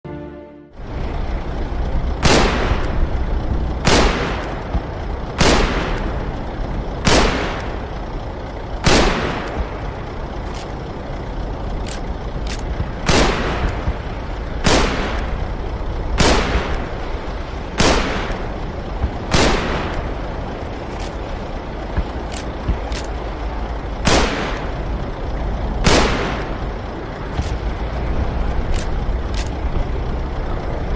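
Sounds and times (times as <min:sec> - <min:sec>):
steady low rumble: 0:00.1 - 0:30.9
rifle shots with echo: 0:02.2 - 0:02.9, 0:03.8 - 0:04.7, 0:05.4 - 0:06.1, 0:07.0 - 0:07.8, 0:08.8 - 0:09.7, 0:13.0 - 0:13.9, 0:14.6 - 0:15.3, 0:16.2 - 0:16.9, 0:17.8 - 0:18.5, 0:19.3 - 0:20.1, 0:24.0 - 0:24.8, 0:25.8 - 0:26.6.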